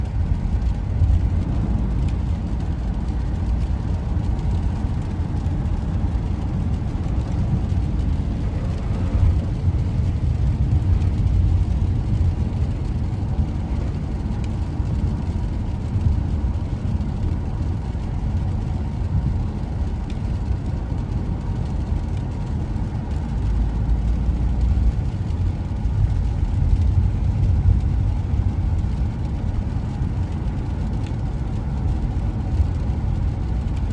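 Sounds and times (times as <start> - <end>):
vehicle running rumble: 0.0 - 33.9.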